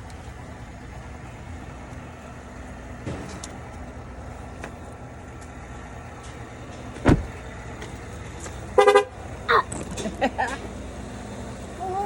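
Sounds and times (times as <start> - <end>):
truck engine and road rumble: 0.0 - 12.0
loud thump: 7.0 - 7.4.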